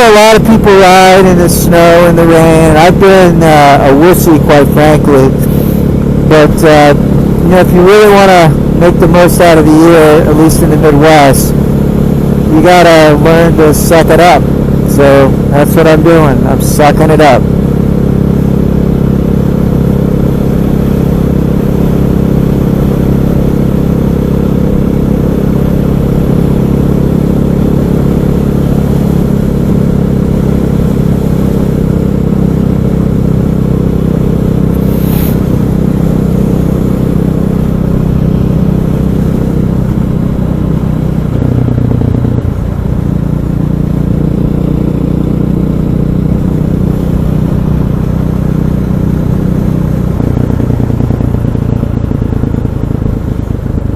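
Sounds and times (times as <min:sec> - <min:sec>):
motorcycle engine cruising: 0:00.0 - 0:53.9.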